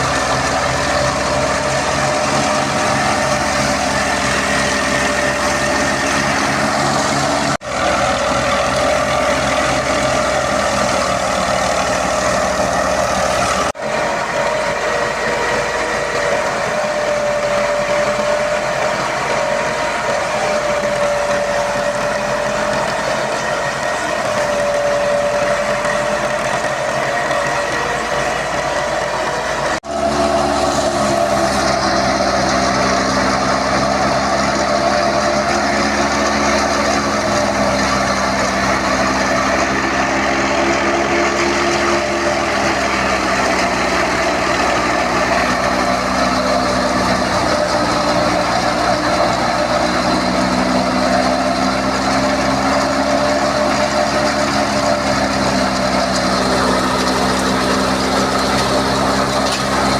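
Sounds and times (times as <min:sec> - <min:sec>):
rushing machine noise: 0:00.0 - 0:59.9
thresher engine running: 0:00.0 - 0:59.9.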